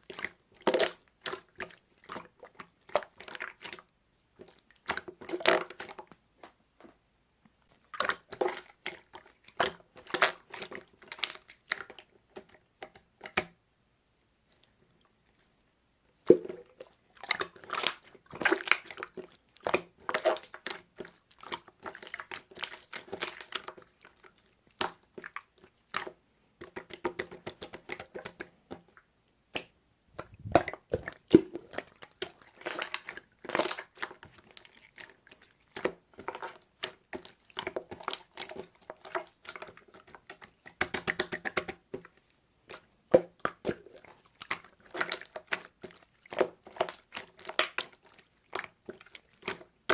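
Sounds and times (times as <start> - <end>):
slime squishing with sticky clicks: 7.9 - 13.6, 16.2 - 49.9
small air-bubble pops: 29.6 - 31.6.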